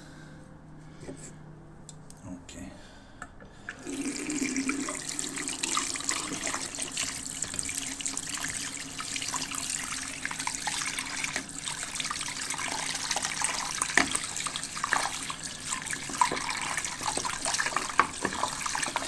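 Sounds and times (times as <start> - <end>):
tap water running into sink: 3.7 - 19.0.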